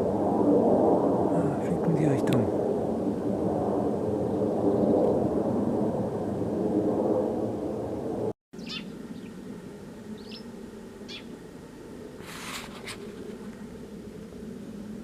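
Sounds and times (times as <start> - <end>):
aircraft rumble overhead: 0.0 - 15.0
steady low drone: 0.0 - 15.0
high bird chirps: 8.6 - 9.3, 10.1 - 10.5, 11.1 - 11.3
hissing rustle: 12.0 - 15.0.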